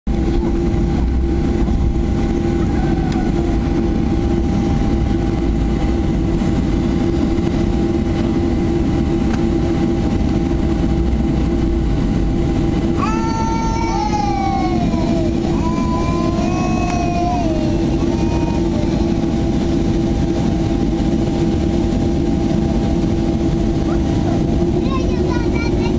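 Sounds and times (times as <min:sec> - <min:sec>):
jet engines rumbling: 0:00.1 - 0:25.9.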